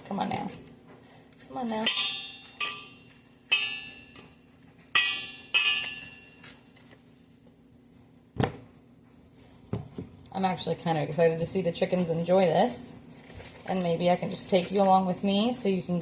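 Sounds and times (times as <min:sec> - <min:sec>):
metal utensil clinking on bowl: 0:01.8 - 0:04.3, 0:13.7 - 0:15.0.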